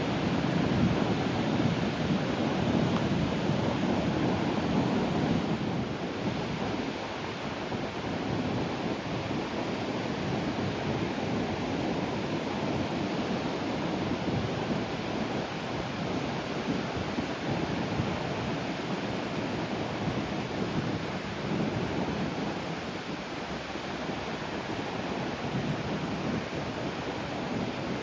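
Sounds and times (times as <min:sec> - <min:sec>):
sea waves breaking on shore: 0:00.0 - 0:28.0.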